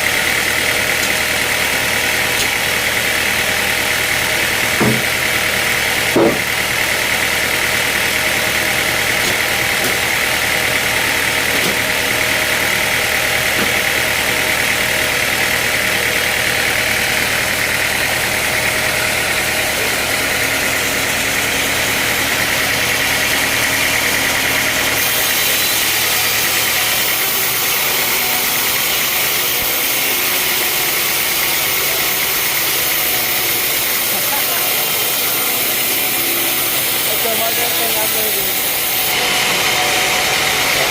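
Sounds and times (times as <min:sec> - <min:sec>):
sawmill machinery running: 0:00.0 - 0:40.9
short knock: 0:04.8 - 0:05.2, 0:06.1 - 0:06.5.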